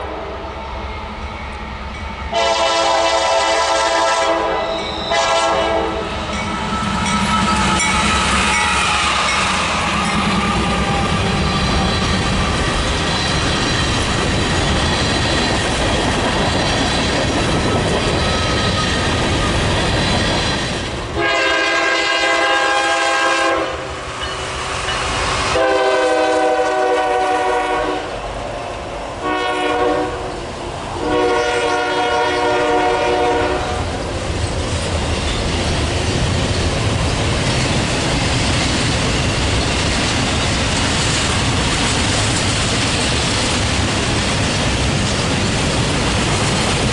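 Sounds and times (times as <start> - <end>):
freight train rumbling past: 0.0 - 46.9
train air horn: 2.3 - 12.1, 21.2 - 23.9, 25.4 - 28.2, 29.2 - 30.4, 31.0 - 33.8
wheels clicking on rail joints: 6.1 - 21.1, 33.8 - 46.9.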